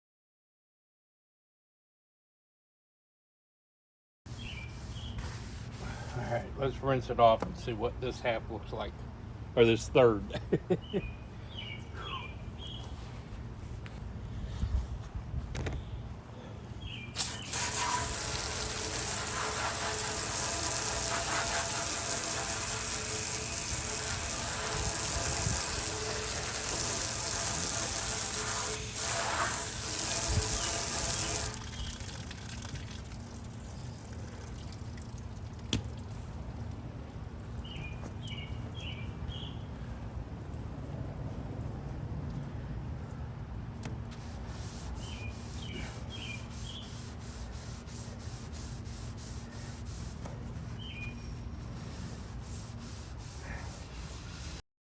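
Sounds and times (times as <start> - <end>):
water splashing into sink: 31.4 - 33.6.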